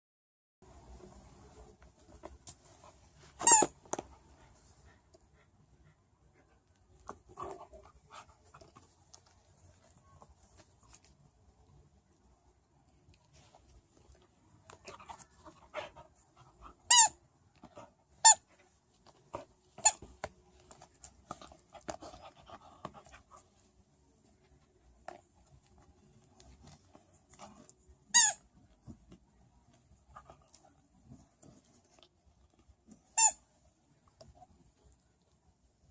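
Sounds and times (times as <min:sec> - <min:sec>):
squeaky dog toy squeaks: 0:03.4 - 0:03.8, 0:16.8 - 0:17.2, 0:18.2 - 0:18.4, 0:19.8 - 0:20.0, 0:28.1 - 0:28.4, 0:33.1 - 0:33.4.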